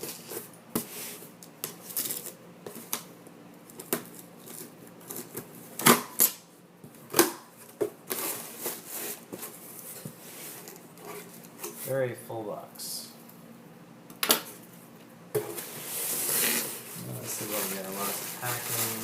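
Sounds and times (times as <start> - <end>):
cardboard scraping and rustling: 8.1 - 11.5, 15.4 - 19.0.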